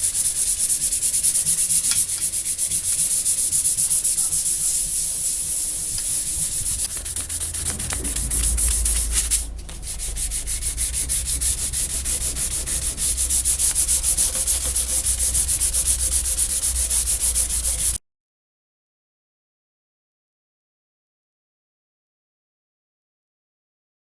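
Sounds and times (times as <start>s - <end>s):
hand sanding strokes: 0.0s - 18.0s.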